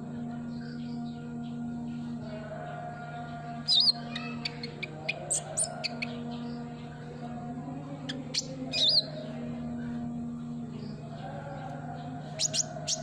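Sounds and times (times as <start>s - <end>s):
bird chirping: 0.0s - 9.2s, 10.4s - 13.0s
soft background music drone: 0.0s - 13.0s
wavering high bird notes: 3.6s - 6.2s.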